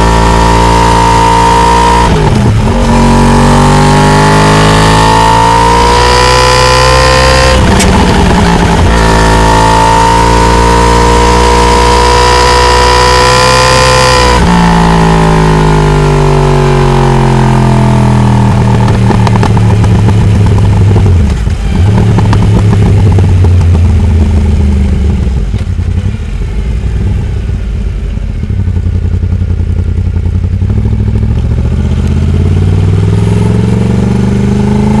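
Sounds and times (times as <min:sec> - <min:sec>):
motorcycle engine revving: 0:00.0 - 0:35.0.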